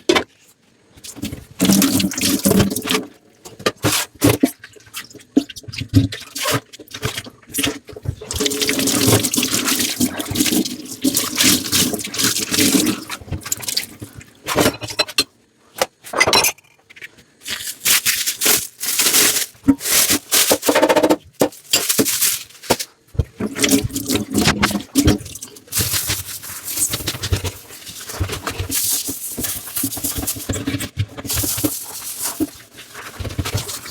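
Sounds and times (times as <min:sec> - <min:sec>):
dishes scraping and rattling: 0:08.3 - 0:15.3, 0:16.1 - 0:17.1, 0:19.2 - 0:22.8.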